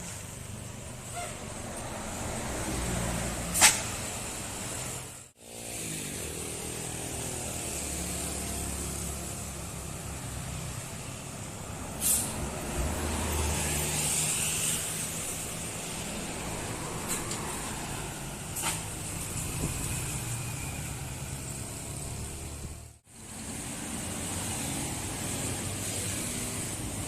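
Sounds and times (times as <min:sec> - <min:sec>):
diesel bus engine under load: 0:00.0 - 0:27.0
air brake hisses: 0:12.0 - 0:12.4.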